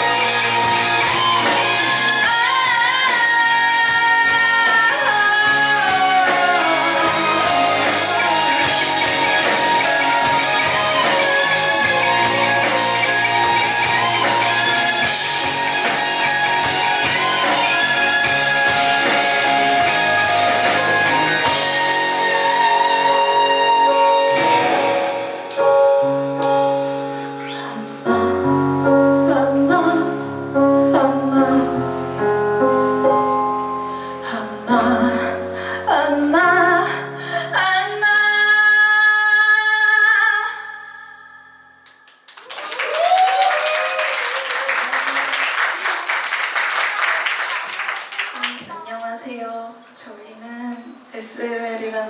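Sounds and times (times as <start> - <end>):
live band playing: 0.0 - 37.0
keyboard chords: 0.0 - 37.5
woman singing: 2.2 - 11.8, 27.6 - 32.0, 34.2 - 41.6
audience applause: 42.2 - 48.8.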